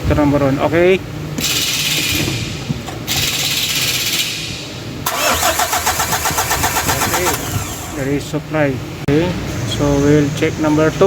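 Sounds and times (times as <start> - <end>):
diesel engine cranking: 5.0 - 8.5.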